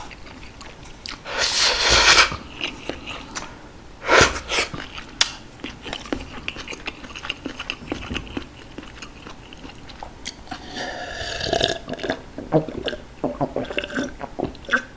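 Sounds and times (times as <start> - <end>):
close chewing with wet mouth clicks: 4.5 - 14.9.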